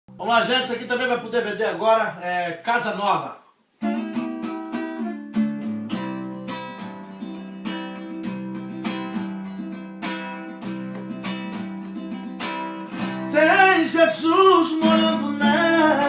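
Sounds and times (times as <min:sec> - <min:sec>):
acoustic guitar strumming chords: 0:03.8 - 0:16.0.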